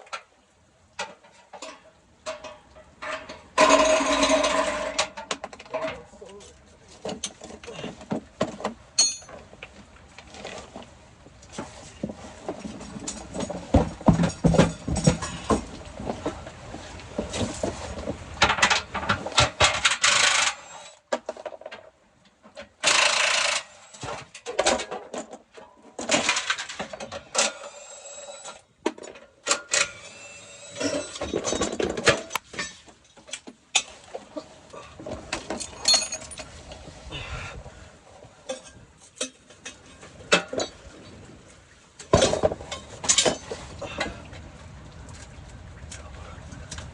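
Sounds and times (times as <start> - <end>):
metal hand tools clinking: 9.0 - 9.3, 35.6 - 36.5.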